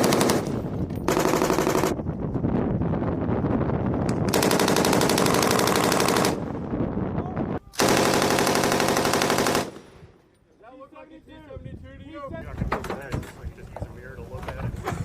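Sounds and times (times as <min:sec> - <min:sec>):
machine gun automatic fire: 0:00.0 - 0:02.0, 0:04.3 - 0:06.4, 0:07.8 - 0:09.9.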